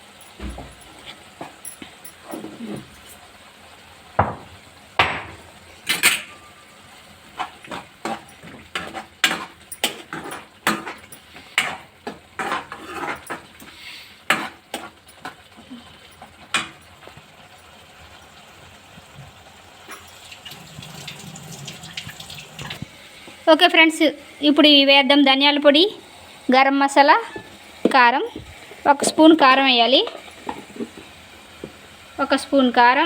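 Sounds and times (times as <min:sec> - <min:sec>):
utensil scraping a pan: 0:05.9 - 0:15.5.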